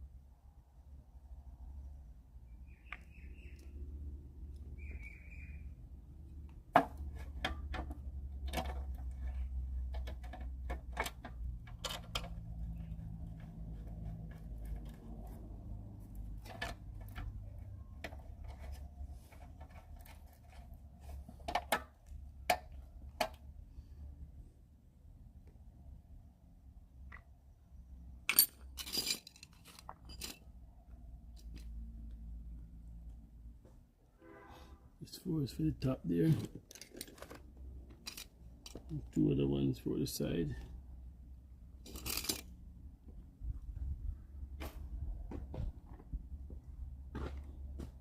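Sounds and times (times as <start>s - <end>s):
bird chirping: 1.8s - 4.0s, 4.6s - 5.8s
metal clicks and knocks: 6.5s - 12.6s.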